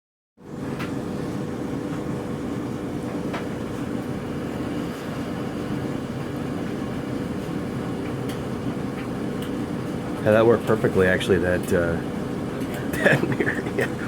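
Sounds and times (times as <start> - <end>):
furnace fan whirring: 0.4 - 14.0.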